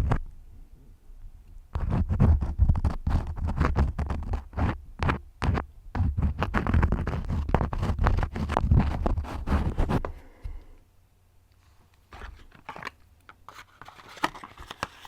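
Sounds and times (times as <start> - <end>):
crayons scribbling: 1.8 - 10.1.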